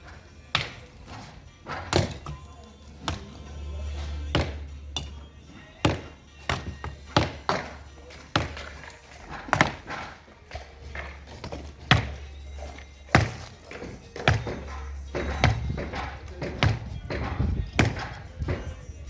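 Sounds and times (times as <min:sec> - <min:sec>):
hand tool knocks: 0:04.3 - 0:10.2, 0:10.9 - 0:18.8.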